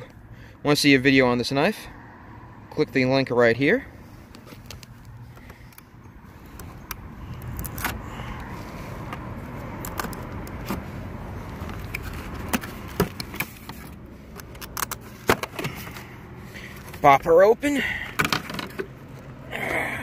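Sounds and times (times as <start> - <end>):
knife cutting tape and cardboard: 7.3 - 8.0.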